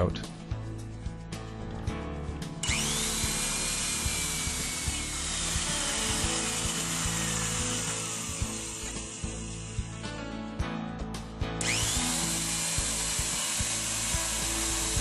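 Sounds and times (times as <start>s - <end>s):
electric drill boring into wood: 2.6s - 10.0s, 11.6s - 15.0s.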